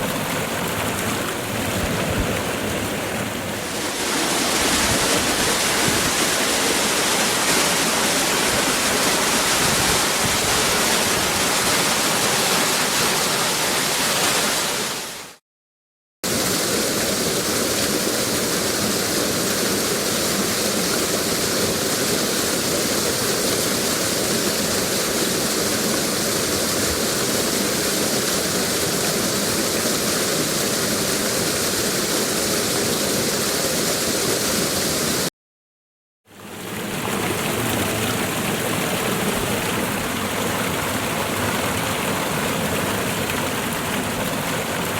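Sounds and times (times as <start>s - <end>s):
waterfall rushing: 2.5s - 15.4s.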